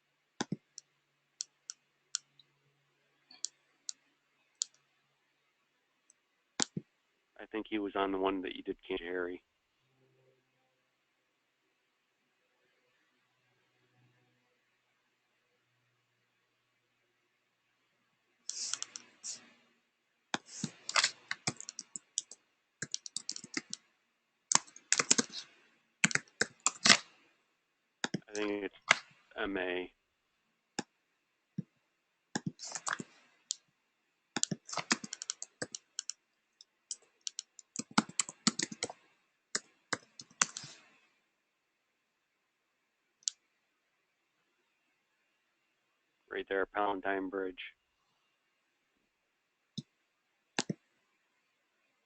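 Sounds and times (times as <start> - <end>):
faint low hum: 0.0 - 52.0
computer key and mouse clicks: 0.4 - 2.5, 6.6 - 6.9, 18.5 - 19.5, 20.4 - 23.9, 24.5 - 27.2, 28.0 - 29.2, 32.4 - 33.6, 34.4 - 40.9, 50.6 - 50.8.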